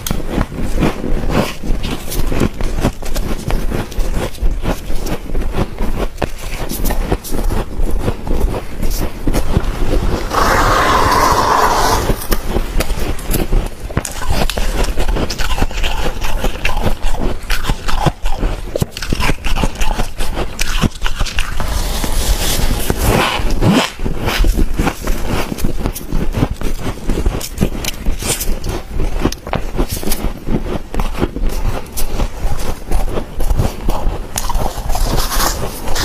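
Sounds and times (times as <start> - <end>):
crunching frost being eaten: 0.0 - 36.0.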